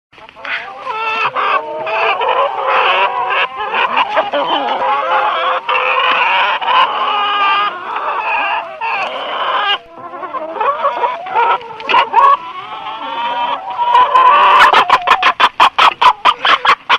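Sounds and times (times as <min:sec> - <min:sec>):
chickens clucking and squawking: 0:00.2 - 0:16.9.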